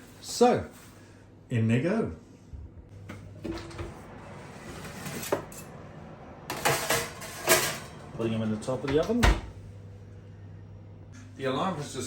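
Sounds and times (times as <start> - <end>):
metal baking trays clinking: 6.5 - 9.2.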